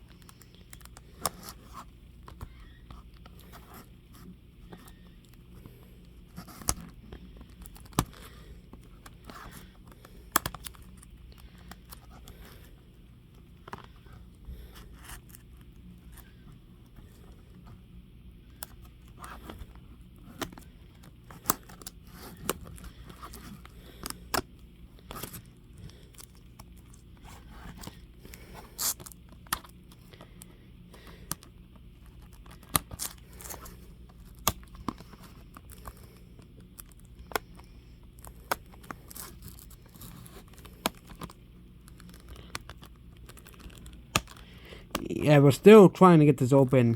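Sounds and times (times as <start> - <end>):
shrink-wrap being torn and crinkling: 31.3 - 45.1.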